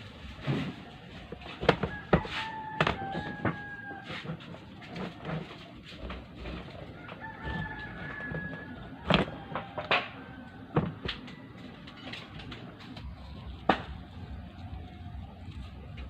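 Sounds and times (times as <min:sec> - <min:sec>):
rooster crowing: 0:01.4 - 0:05.6, 0:06.6 - 0:12.4.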